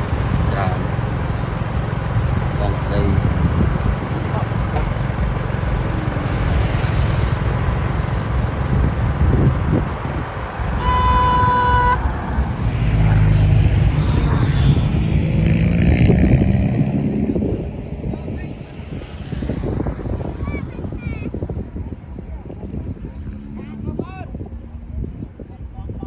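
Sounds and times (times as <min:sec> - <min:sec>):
heavy rumble: 0:00.0 - 0:26.0
vehicle engine drone: 0:00.0 - 0:26.0
vehicle horn honk: 0:10.7 - 0:12.5.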